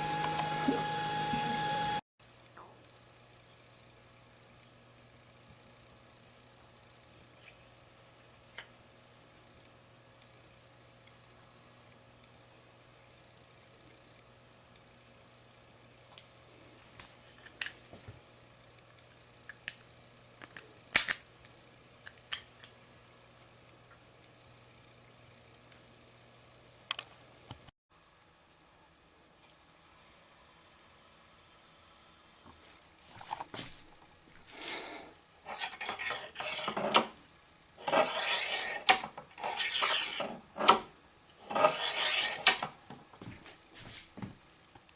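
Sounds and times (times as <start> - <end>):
faint steady hum: 0.0 - 44.9
hard objects scraping together: 34.4 - 37.1, 37.8 - 40.8, 41.4 - 42.7.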